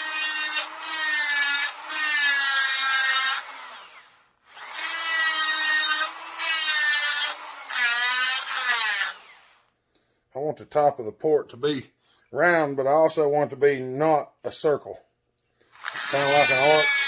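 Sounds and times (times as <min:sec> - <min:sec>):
rotary grinder whine: 0:00.0 - 0:09.6, 0:15.8 - 0:17.0.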